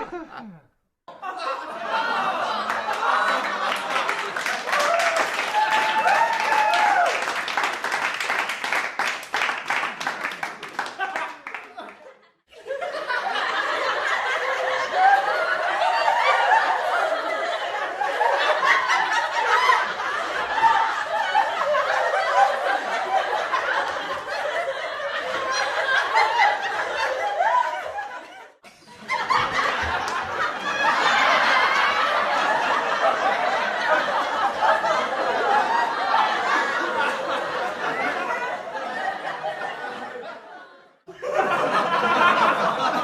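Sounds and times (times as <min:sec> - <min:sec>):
studio audience laughter: 0:00.0 - 0:07.0, 0:09.7 - 0:43.0.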